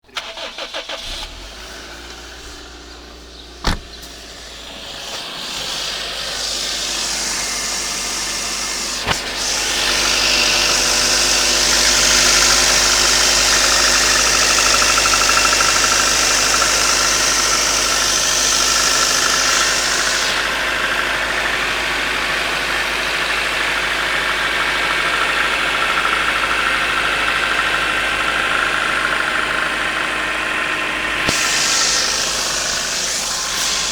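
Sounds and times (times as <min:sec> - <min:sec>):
car engine idling: 0:00.0 - 0:33.9
hiss: 0:03.8 - 0:21.0, 0:31.2 - 0:33.9
engine knock: 0:06.2 - 0:33.9.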